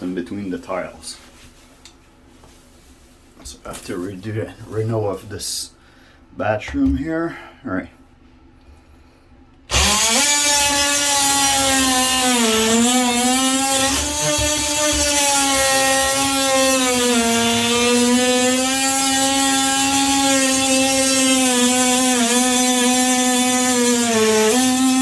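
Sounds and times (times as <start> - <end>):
oscillating multi-tool buzzing: 9.7 - 25.0.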